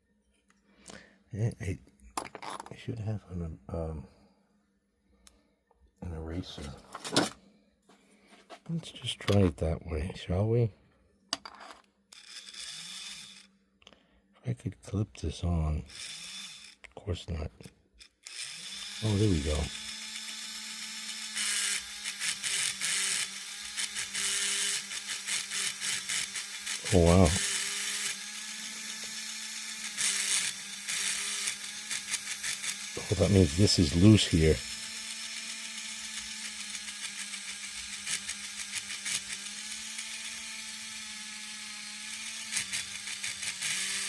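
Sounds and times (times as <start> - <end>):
model train motor hum: 12.1 - 13.5, 15.9 - 16.8, 18.0 - 44.0.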